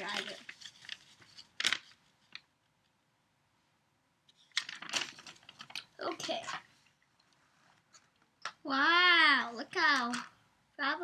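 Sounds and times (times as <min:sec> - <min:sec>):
plastic packaging rustling: 0:00.0 - 0:02.5, 0:04.4 - 0:06.9.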